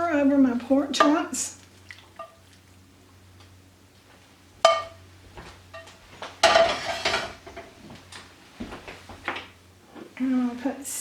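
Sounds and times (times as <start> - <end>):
metal pan clinking: 4.6 - 5.0
rattling scrape: 6.5 - 7.3.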